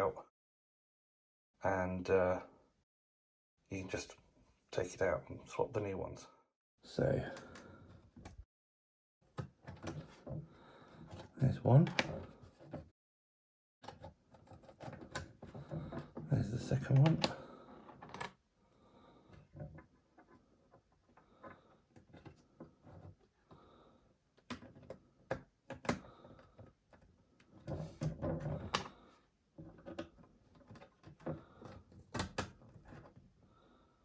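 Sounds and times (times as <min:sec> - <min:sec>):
small clicks of handling parts: 0:17.1 - 0:18.4.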